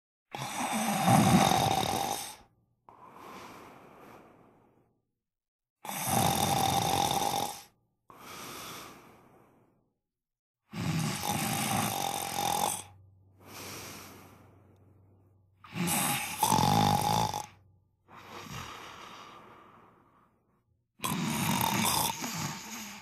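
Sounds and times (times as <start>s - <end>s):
man snoring: 0.3s - 3.8s, 5.8s - 9.4s, 10.6s - 14.6s, 15.6s - 20.0s, 21.0s - 23.0s.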